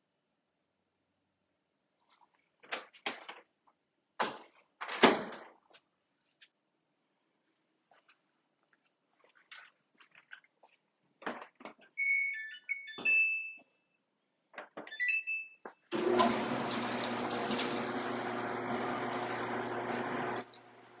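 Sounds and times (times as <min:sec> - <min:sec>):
clothes dryer running: 0:15.9 - 0:21.0.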